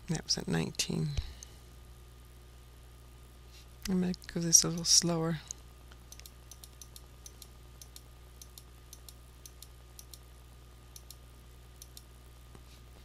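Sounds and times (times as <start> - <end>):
low electrical hum: 0.0 - 13.0
computer mouse clicking: 6.1 - 10.2, 11.0 - 11.2, 11.8 - 12.1.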